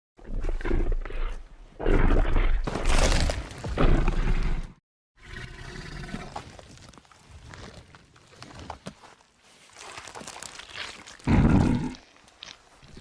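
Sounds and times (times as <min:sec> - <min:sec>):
dinosaur roar: 0:11.2 - 0:12.0
low creature rumbling: 0:11.2 - 0:12.1.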